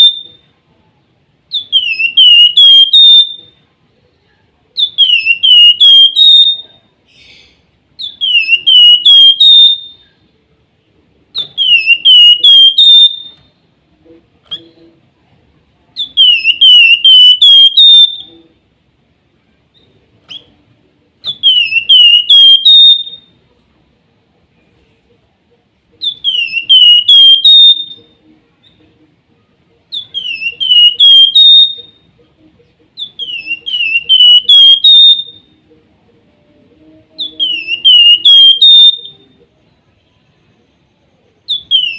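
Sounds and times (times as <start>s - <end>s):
bird whistling song: 0.0s - 0.5s, 1.5s - 3.6s, 4.8s - 10.2s, 11.3s - 13.6s, 16.0s - 18.4s, 21.2s - 23.3s, 26.0s - 28.8s, 29.9s - 32.1s, 32.7s - 39.5s, 41.4s - 41.9s.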